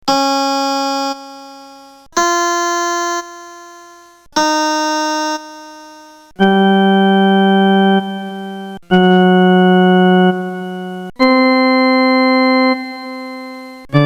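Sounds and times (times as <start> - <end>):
electronic organ sustained notes: 6.4 - 14.0.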